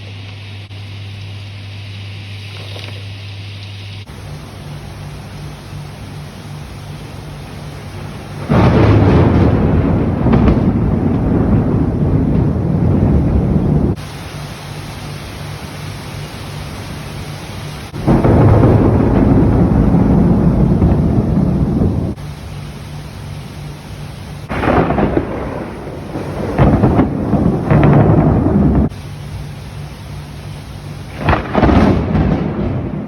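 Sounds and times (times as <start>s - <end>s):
rain hiss: 0.0s - 33.0s
thunder rumbling: 6.8s - 14.1s, 17.8s - 22.2s, 24.2s - 29.0s, 30.8s - 33.0s.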